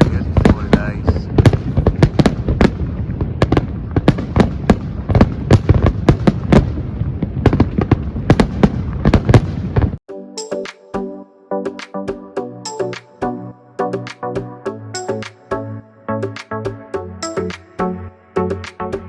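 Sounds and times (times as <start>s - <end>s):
fireworks bursting: 0.0s - 10.0s.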